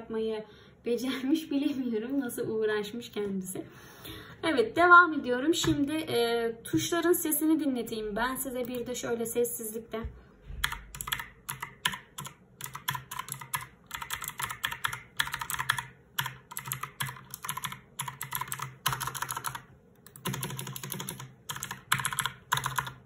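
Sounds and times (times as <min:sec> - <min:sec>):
typing on mechanical keyboard: 0:10.6 - 0:23.0.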